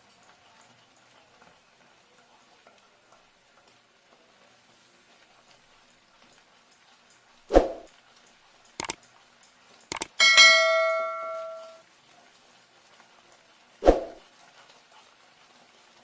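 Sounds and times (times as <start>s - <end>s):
metal utensils clinking: 9.9s - 11.8s
ringing metallic strike: 10.2s - 11.8s.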